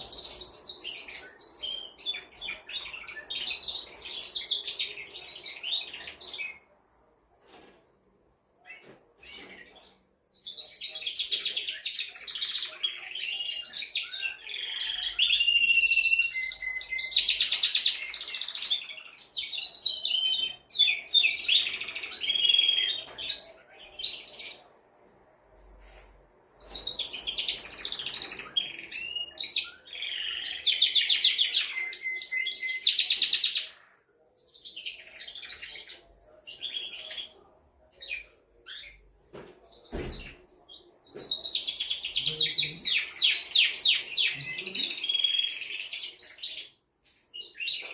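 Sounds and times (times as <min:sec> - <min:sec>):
canary singing trills: 0:08.6 - 0:24.7, 0:26.6 - 0:37.4.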